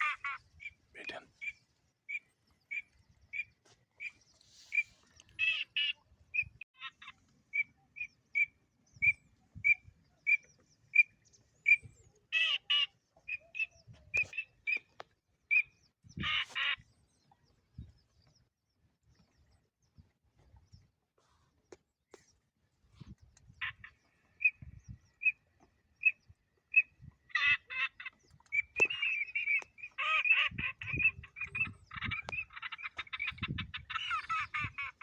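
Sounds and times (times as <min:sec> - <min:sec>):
harsh bird calls: 0:26.0 - 0:35.0.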